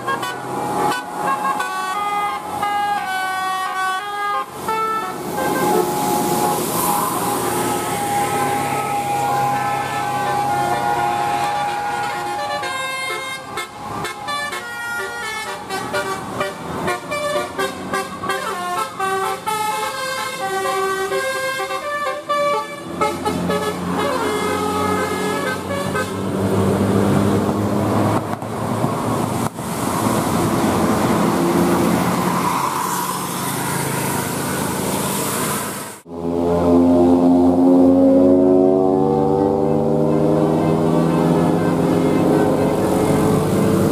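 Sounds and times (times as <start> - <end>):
multi-tone bus air horn: 0.0 - 26.4
engine and road noise: 0.0 - 43.9.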